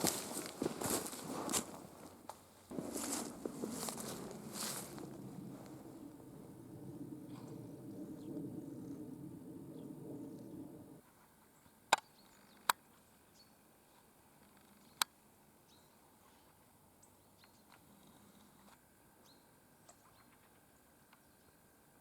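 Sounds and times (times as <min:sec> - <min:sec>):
footsteps in dry leaves: 0:00.0 - 0:06.6
small birds chirping: 0:00.0 - 0:11.0.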